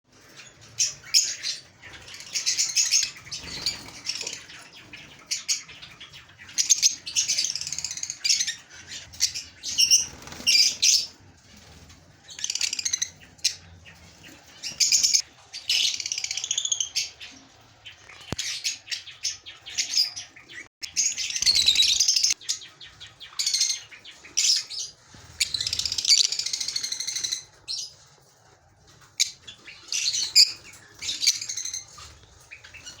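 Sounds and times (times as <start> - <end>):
lovebirds chattering: 0.4 - 11.7.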